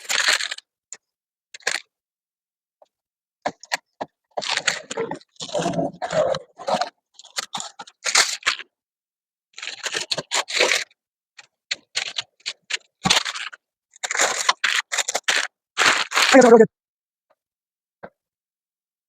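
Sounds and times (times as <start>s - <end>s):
masking tape tearing and crinkling: 0.0s - 0.6s, 12.0s - 16.6s.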